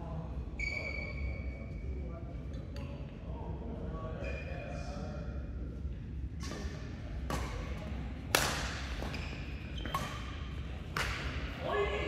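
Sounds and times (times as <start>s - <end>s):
rackets striking shuttlecock: 6.4s - 7.7s, 8.3s - 9.2s, 9.8s - 11.5s.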